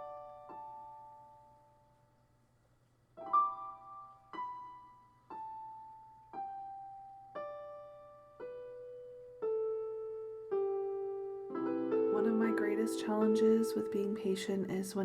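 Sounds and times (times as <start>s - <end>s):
slow solo piano chords: 3.2s - 15.0s.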